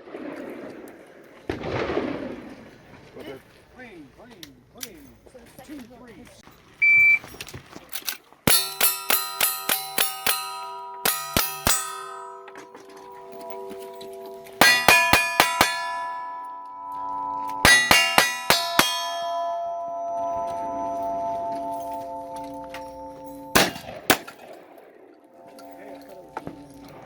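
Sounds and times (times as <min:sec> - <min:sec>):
steel targets ringing: 0:08.5 - 0:27.0.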